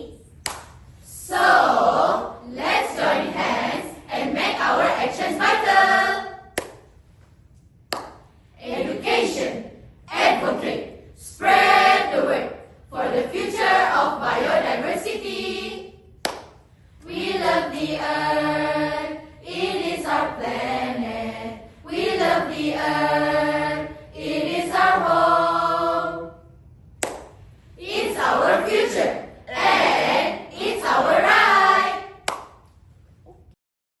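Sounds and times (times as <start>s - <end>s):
young voices singing in chorus: 1.1s - 6.5s, 8.6s - 16.0s, 17.0s - 26.5s, 27.8s - 32.2s.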